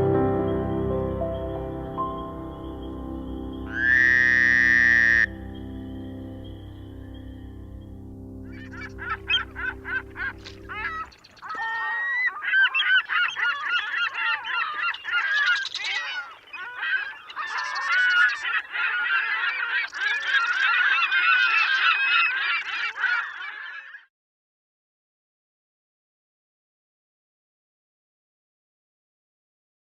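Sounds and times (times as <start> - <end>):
flock of birds honking: 3.7 - 5.4, 8.5 - 24.1.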